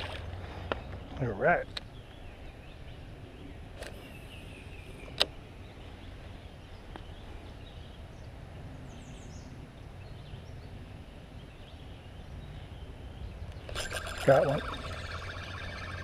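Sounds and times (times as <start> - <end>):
faint high bird chirps: 13.6 - 16.0.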